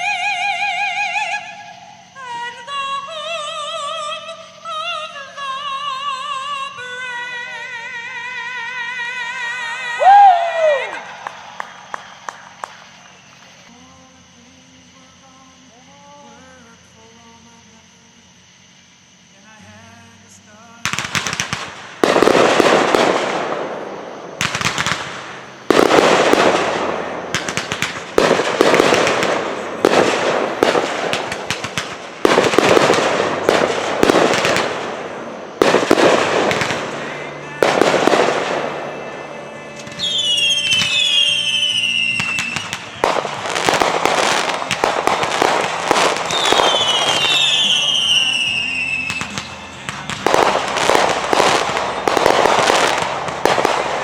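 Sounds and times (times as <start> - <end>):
whistling fireworks: 0.0 - 16.8, 20.6 - 54.0
aerial firework bursts with crackle: 20.9 - 39.0, 42.1 - 54.0.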